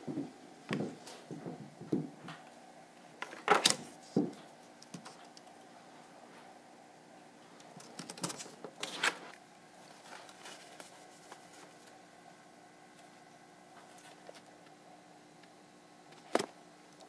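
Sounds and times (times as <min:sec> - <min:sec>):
light hum: 0:00.0 - 0:17.0.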